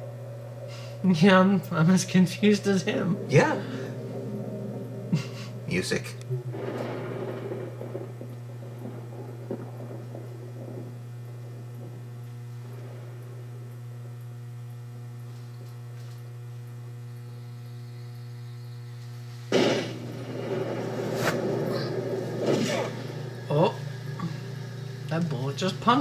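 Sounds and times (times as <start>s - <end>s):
steady low hum: 0.0s - 26.0s
sudden loud bang: 4.8s - 10.3s, 19.5s - 25.2s.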